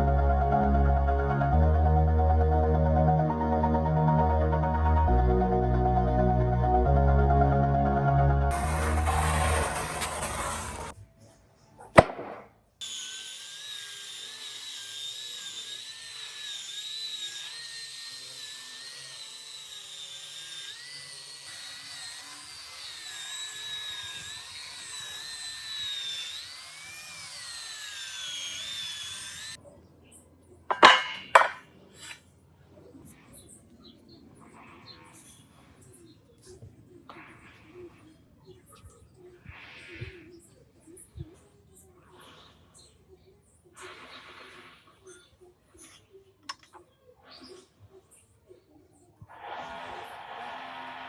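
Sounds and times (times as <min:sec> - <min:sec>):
power tool whining on wood: 0:08.5 - 0:11.0, 0:12.8 - 0:29.6, 0:49.3 - 0:51.0.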